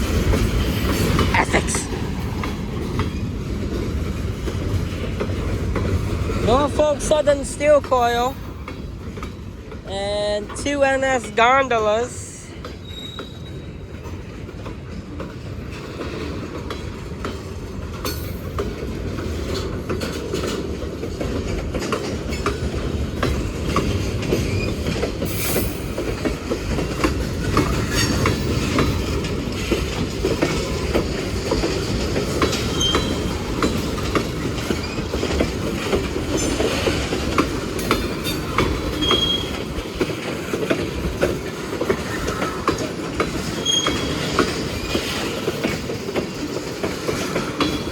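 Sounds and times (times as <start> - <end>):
freight train rumbling: 0.0 - 47.9
wheels clicking over rail joints: 0.0 - 47.9
high wheel squeals: 12.8 - 13.8, 32.7 - 33.4, 39.0 - 39.6, 43.6 - 45.1.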